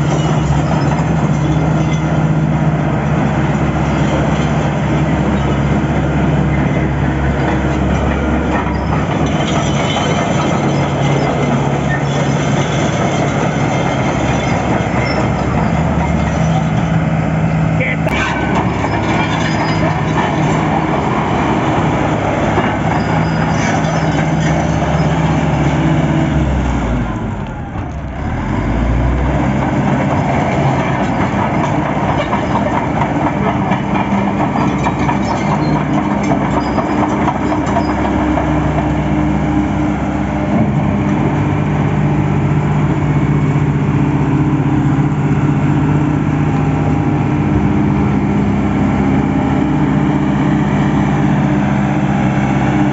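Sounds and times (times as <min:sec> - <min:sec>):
diesel engine running: 0:00.0 - 0:52.9.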